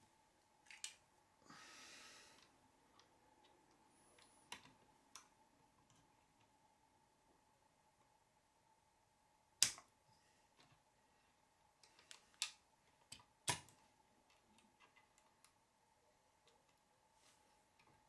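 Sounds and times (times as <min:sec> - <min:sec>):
plastic clicks and snaps: 0:09.6 - 0:09.9.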